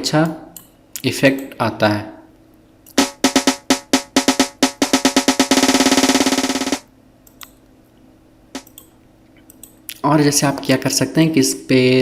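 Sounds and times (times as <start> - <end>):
snare drum roll: 3.0 - 6.8.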